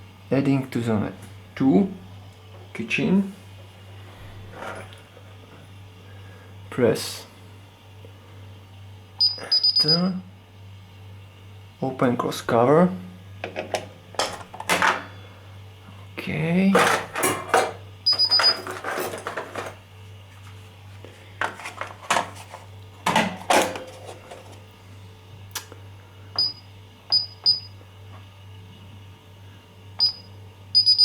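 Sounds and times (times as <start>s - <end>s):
steady low hum: 0.0s - 31.0s
alarm keypad beeps: 9.2s - 10.1s, 18.1s - 18.6s, 26.4s - 27.7s, 30.0s - 31.0s.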